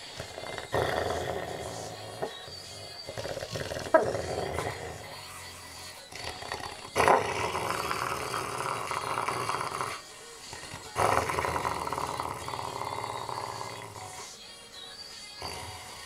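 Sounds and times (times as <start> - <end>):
dog growling and snarling: 0.0 - 14.3.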